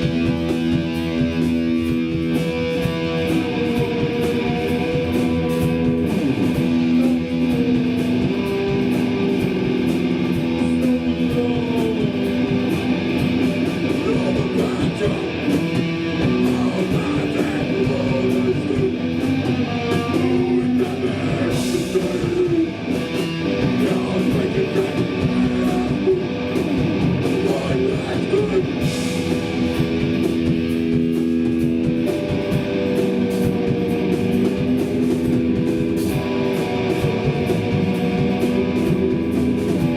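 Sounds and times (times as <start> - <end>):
punk band playing loudly: 0.0 - 39.9.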